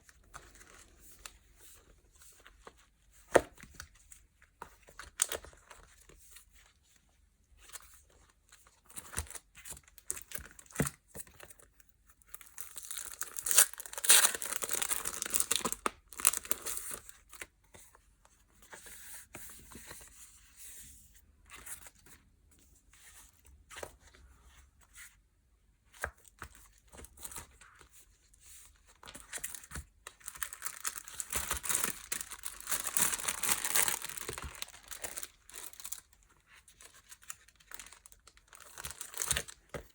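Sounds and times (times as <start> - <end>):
packaging tearing and crinkling: 12.6 - 17.0, 30.2 - 36.1, 37.1 - 39.6.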